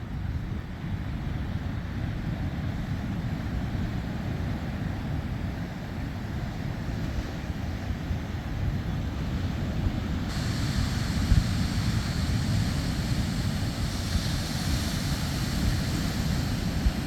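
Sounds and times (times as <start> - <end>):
ocean surf on sandy beach: 6.3 - 17.0
wind buffeting microphone: 9.9 - 17.0.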